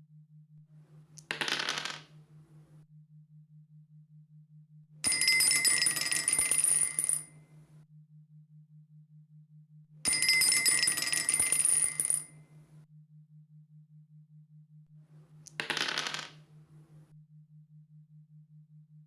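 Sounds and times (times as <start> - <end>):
dice rolling on a hard surface: 1.3 - 2.2, 5.4 - 7.2, 10.8 - 12.2, 15.5 - 16.4.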